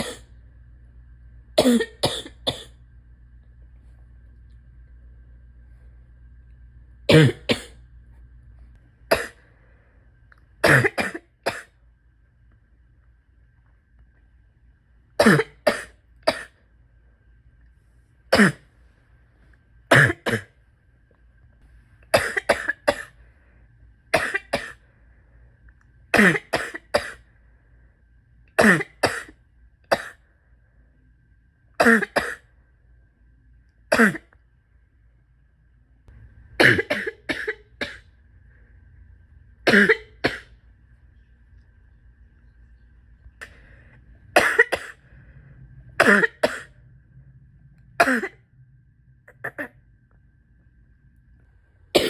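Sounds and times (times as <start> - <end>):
person chesty coughing: 0.0 - 0.3, 1.6 - 2.8, 7.1 - 7.8, 9.1 - 9.5, 10.6 - 11.8, 15.2 - 16.6, 18.3 - 18.7, 19.9 - 20.6, 22.1 - 23.2, 24.2 - 24.8, 26.1 - 27.2, 28.6 - 30.2, 31.8 - 32.5, 33.9 - 34.4, 36.6 - 38.1, 39.7 - 40.6, 44.4 - 45.0, 46.0 - 46.7, 48.0 - 48.4.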